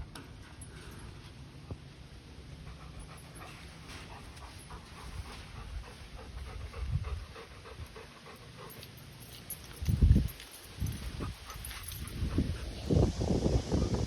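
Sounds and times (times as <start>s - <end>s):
dog panting: 2.6s - 9.1s.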